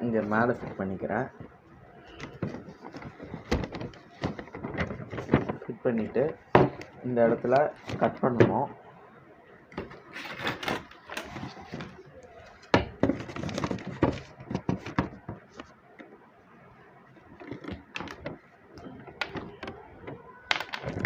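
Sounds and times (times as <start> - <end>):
plastic pipes knocking together: 12.7 - 15.4, 17.4 - 21.0.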